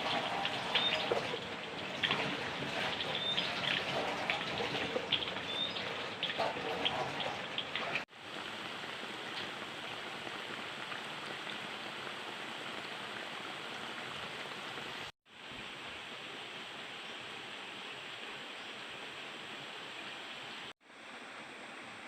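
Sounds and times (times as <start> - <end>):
steady hissing noise: 8.1 - 22.0.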